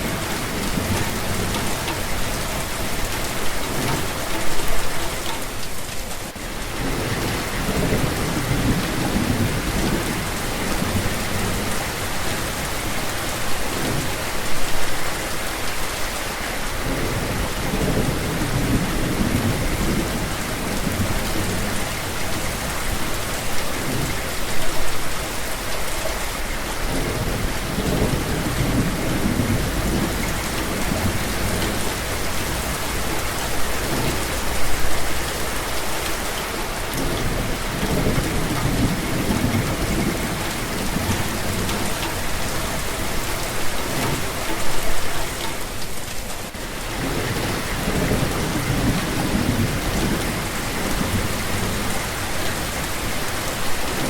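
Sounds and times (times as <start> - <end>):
steady rain: 0.0 - 54.0
thunder rumbling: 26.9 - 35.7, 36.8 - 44.4.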